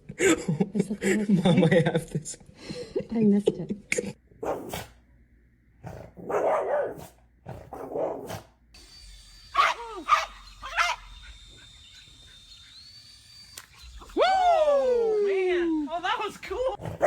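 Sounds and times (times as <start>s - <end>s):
dog barking and yelping: 4.4s - 5.0s, 6.2s - 8.6s, 9.5s - 13.0s.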